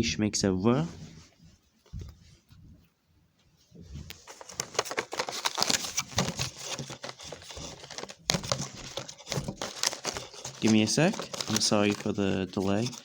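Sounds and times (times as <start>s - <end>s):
paper rustling: 3.9s - 13.0s
cards clicking and tapping: 4.3s - 13.0s.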